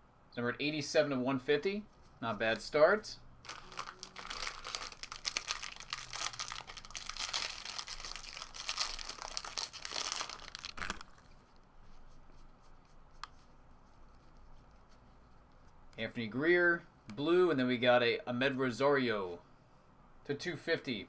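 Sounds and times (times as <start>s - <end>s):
wrapper being torn and crinkled: 3.4s - 11.3s.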